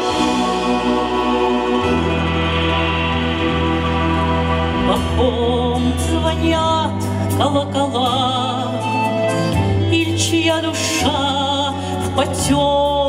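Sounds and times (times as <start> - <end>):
slow song with bass and vibrato melody: 0.0 - 13.0.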